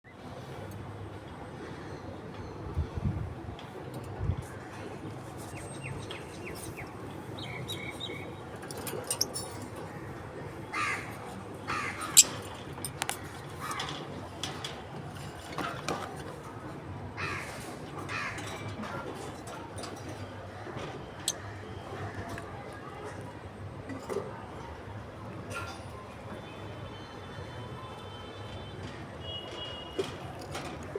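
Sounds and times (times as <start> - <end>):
lovebirds screeching: 10.8 - 12.5.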